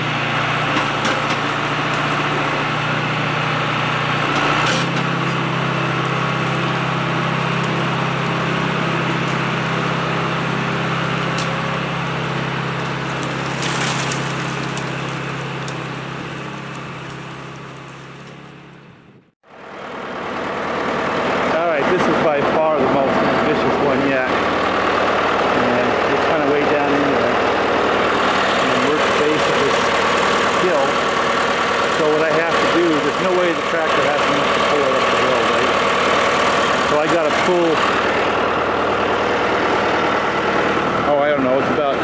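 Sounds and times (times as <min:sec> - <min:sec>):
tractor diesel engine running: 0:00.0 - 0:42.0.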